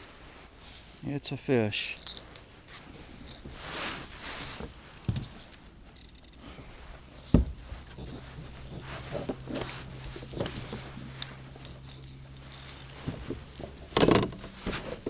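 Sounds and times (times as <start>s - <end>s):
fish handling knocks and rustling: 7.3s - 15.0s.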